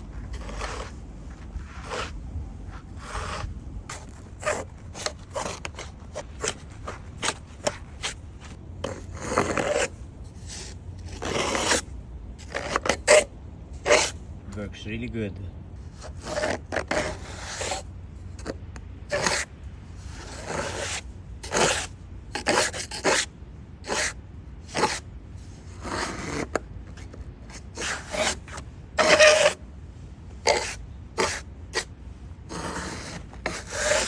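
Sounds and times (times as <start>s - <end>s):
plastic blades scraping through snow: 0.0s - 14.2s, 18.4s - 24.1s, 24.7s - 25.0s, 25.7s - 29.6s, 30.4s - 31.9s, 32.5s - 34.0s.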